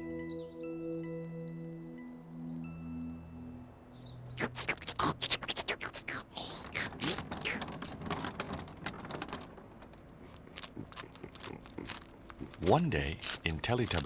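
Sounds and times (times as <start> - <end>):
crisp crackling clicks: 4.4 - 14.0.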